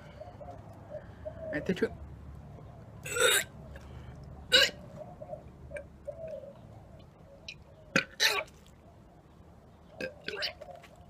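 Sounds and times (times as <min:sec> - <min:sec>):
faint throaty sounds: 0:00.0 - 0:08.5.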